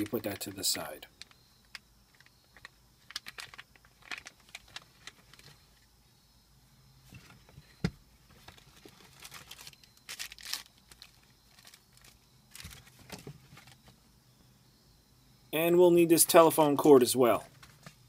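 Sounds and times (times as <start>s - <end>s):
plastic wrap crinkling: 2.2s - 5.6s, 8.3s - 13.8s.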